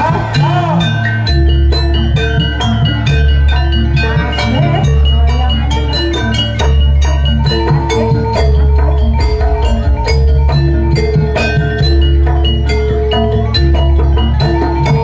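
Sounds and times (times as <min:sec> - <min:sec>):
dance music with mallets and drums: 0:00.0 - 0:15.0.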